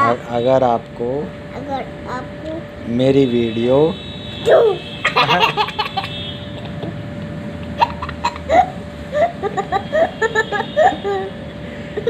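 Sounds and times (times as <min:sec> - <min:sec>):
young child giggling: 0:04.5 - 0:07.0, 0:07.8 - 0:11.4.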